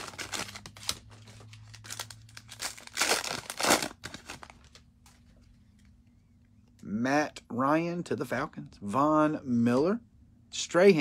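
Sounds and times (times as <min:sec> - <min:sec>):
cellophane wrapper crinkling: 0:00.0 - 0:05.6.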